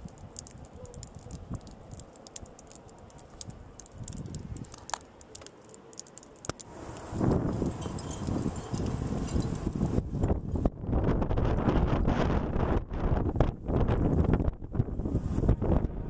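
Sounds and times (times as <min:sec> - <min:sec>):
light irregular ticking: 0:00.0 - 0:09.6
wind buffeting microphone: 0:02.6 - 0:04.9, 0:06.7 - 0:16.0.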